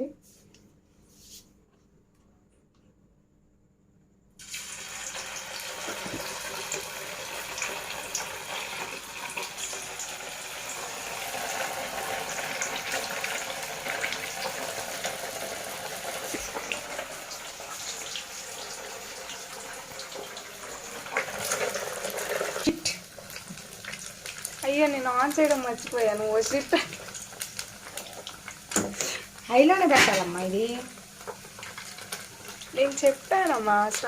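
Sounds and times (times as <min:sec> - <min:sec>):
food sizzling in hot oil: 0:04.4 - 0:34.0.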